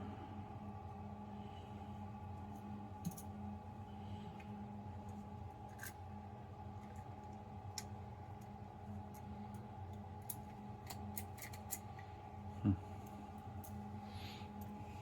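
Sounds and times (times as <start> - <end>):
low background hum: 0.0 - 15.0.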